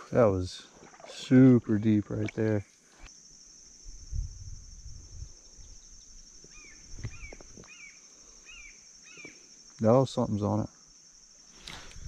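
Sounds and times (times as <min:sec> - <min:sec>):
high insect drone: 0:00.0 - 0:12.0
bird chirping: 0:05.5 - 0:09.4.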